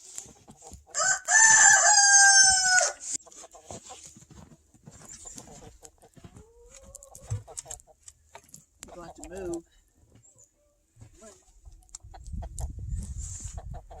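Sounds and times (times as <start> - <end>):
rooster crowing: 1.0 - 3.0.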